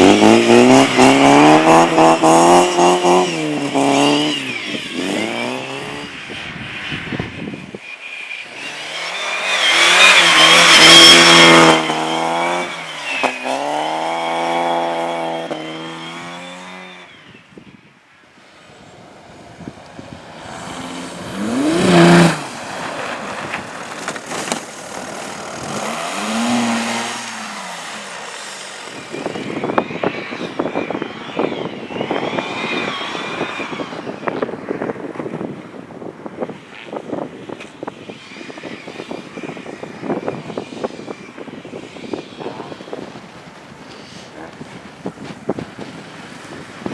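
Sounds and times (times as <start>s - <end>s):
race cars revving past: 0.0s - 17.3s, 18.4s - 46.9s
rough crackling noise: 18.7s - 29.6s.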